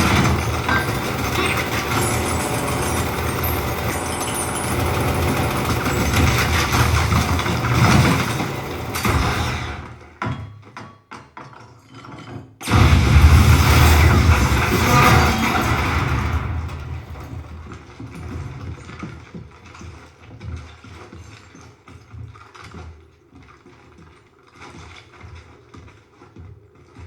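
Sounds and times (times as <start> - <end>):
vehicle engine noise: 0.0 - 9.4
action film music: 0.0 - 10.0, 12.7 - 18.8
loud bass hit: 12.7 - 17.5.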